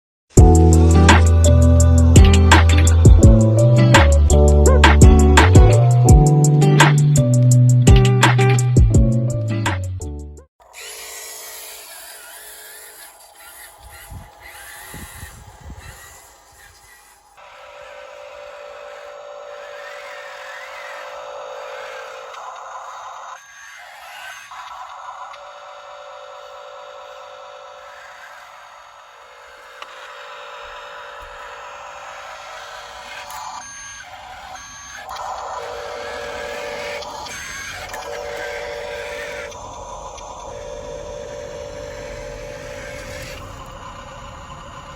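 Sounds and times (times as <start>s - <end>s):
small electric motors whirring: 0.3s - 8.8s, 10.6s - 44.9s
steady mechanical drone: 0.3s - 9.8s, 10.7s - 44.9s
intro music: 0.4s - 10.5s
reversing beeper: 33.4s - 44.9s.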